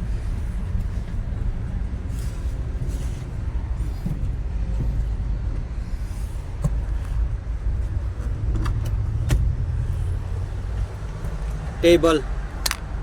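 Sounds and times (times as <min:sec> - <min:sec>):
engine idling: 0:00.0 - 0:13.0
sharp metallic clicks: 0:12.6 - 0:12.9.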